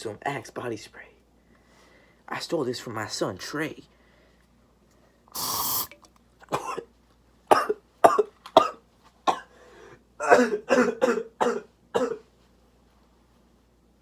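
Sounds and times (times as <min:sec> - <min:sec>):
person coughing: 0:06.5 - 0:06.9, 0:07.5 - 0:09.5, 0:10.2 - 0:12.3.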